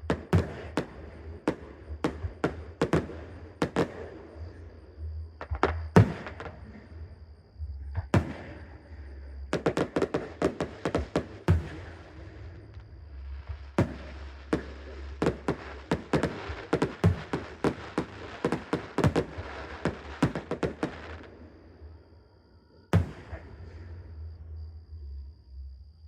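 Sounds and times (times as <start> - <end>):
fireworks bangs and crackles: 0.0 - 4.4, 5.4 - 6.8, 8.1 - 8.8, 9.5 - 12.8, 13.4 - 21.4, 23.0 - 23.8
loud firework bang: 23.0 - 23.7.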